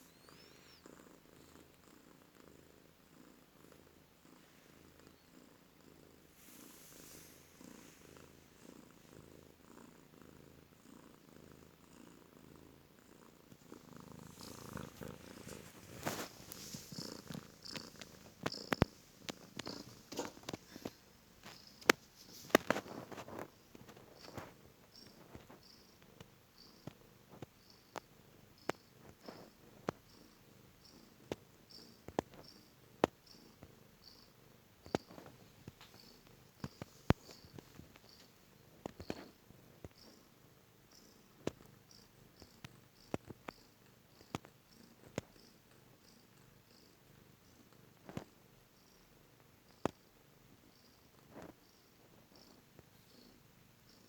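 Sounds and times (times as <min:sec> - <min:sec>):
cat snoring: 0:00.0 - 0:21.0
cat snoring softly: 0:00.0 - 0:54.0.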